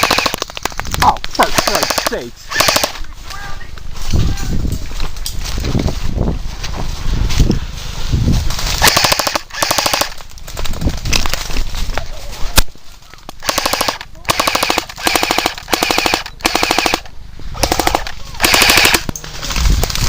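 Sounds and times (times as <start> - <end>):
airsoft rifles firing bursts: 0.0 - 0.5, 1.4 - 3.0, 8.8 - 10.2, 13.4 - 19.1.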